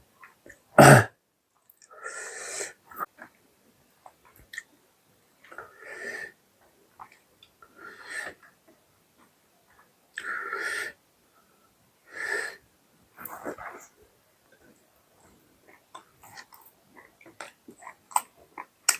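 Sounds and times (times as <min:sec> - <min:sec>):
wheezy breath hisses: 0:01.9 - 0:02.9, 0:12.1 - 0:12.6
chewing clicks: 0:15.7 - 0:18.9.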